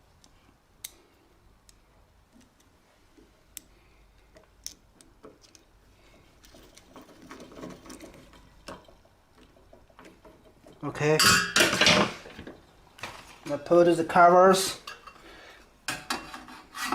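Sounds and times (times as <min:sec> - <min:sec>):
small rattles and clinks: 0:05.3 - 0:12.9.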